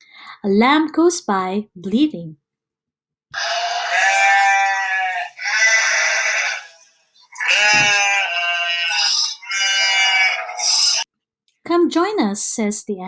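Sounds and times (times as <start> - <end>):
lamb bleating: 3.4 - 11.1.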